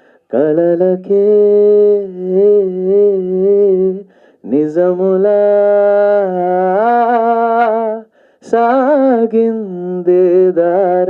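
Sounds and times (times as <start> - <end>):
man singing unaccompanied: 0.0 - 11.0.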